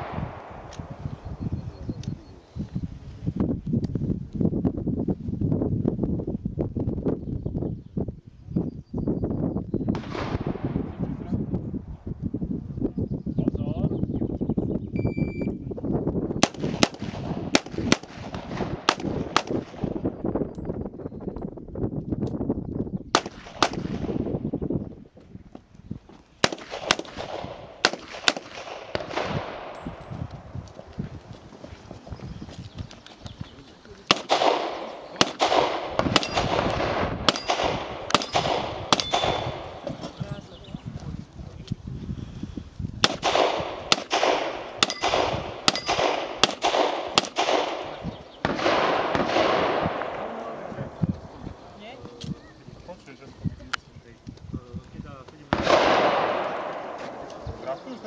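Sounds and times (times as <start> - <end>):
revolver gunshots: 10.0 - 11.0, 16.4 - 20.1, 23.2 - 24.4, 26.4 - 30.1, 34.1 - 40.1, 43.0 - 50.7, 55.5 - 57.8
short ringing tone: 15.0 - 15.5.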